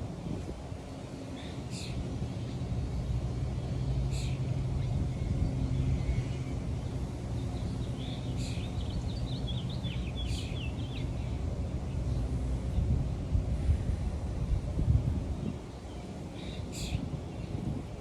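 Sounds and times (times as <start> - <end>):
low outdoor rumble: 0.0 - 18.0.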